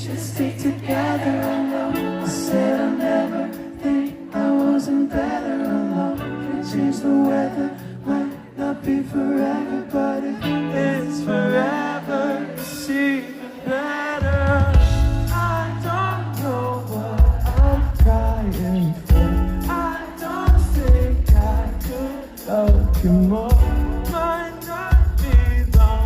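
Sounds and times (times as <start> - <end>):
guitar: 0.0 - 26.0
person singing: 0.0 - 26.0
held bass notes: 14.4 - 26.0.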